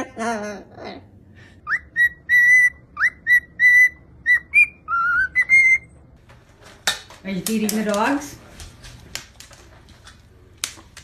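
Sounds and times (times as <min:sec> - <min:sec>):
pet bird whistling: 0:01.6 - 0:05.9.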